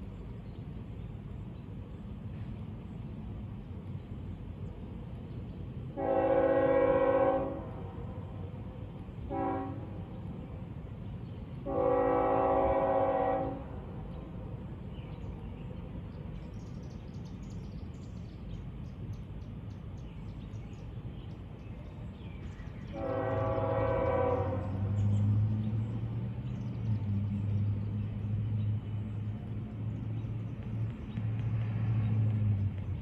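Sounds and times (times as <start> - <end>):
train horn blasts: 5.9 - 10.2, 11.6 - 14.0, 22.9 - 25.6.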